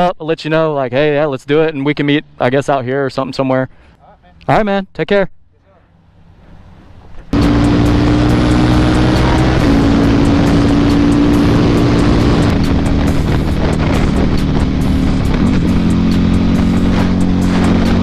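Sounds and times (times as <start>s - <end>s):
motorcycle engine running: 7.4s - 18.0s.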